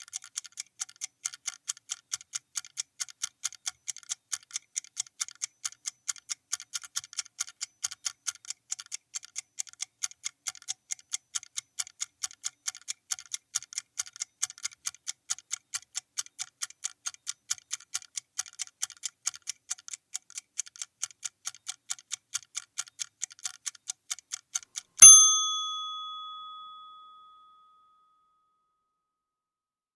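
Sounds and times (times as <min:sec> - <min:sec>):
clock ticking fast: 0:00.0 - 0:24.9
loud bell strike: 0:25.0 - 0:27.2.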